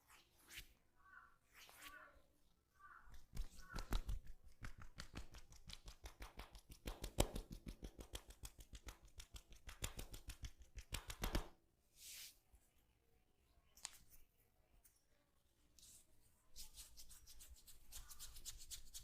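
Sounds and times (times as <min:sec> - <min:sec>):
hands clicking and tapping on head: 0:03.0 - 0:11.6.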